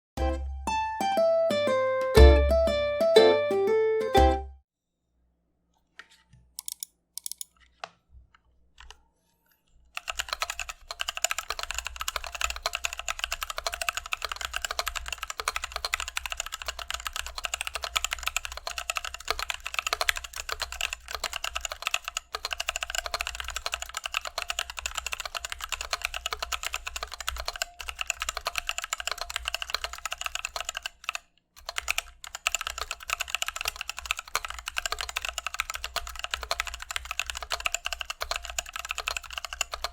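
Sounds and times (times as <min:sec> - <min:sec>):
typing on mechanical keyboard: 0:06.6 - 0:07.6, 0:10.0 - 0:39.9.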